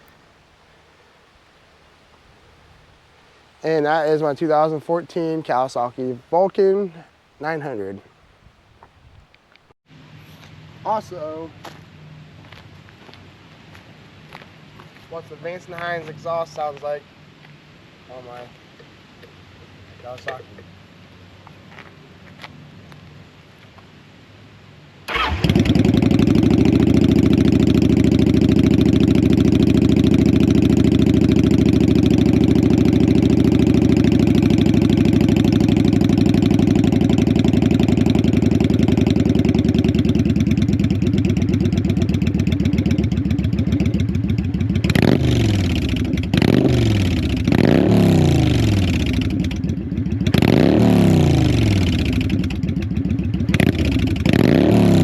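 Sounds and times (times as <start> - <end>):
motorcycle starting and idling: 25.1 - 55.0
motorcycle throttle blips: 25.1 - 55.0.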